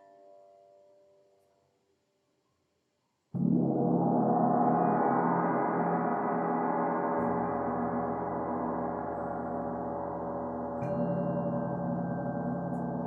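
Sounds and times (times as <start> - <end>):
meditation music drone: 3.4 - 13.0.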